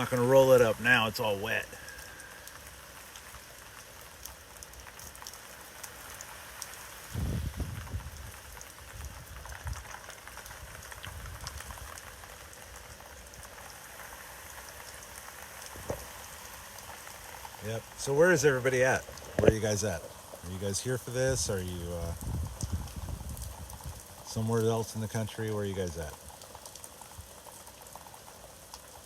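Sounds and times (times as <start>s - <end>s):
steady rain: 0.0s - 29.0s
wind gusts on microphone: 7.1s - 8.4s, 21.3s - 24.1s.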